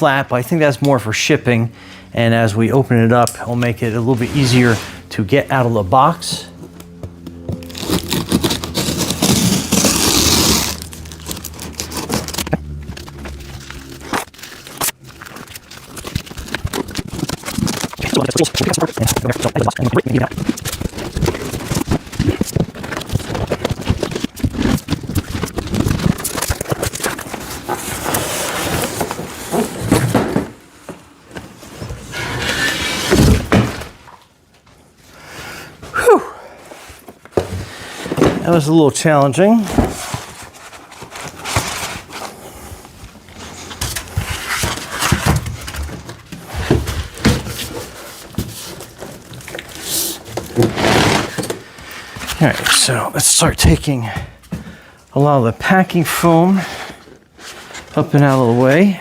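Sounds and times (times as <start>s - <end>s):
cardboard box rustling and scraping: 7.5s - 30.6s, 39.5s - 52.9s.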